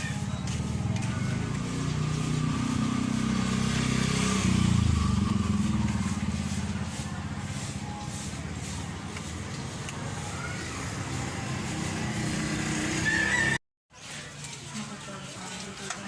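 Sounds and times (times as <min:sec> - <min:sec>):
car engine revving: 0:01.3 - 0:07.6.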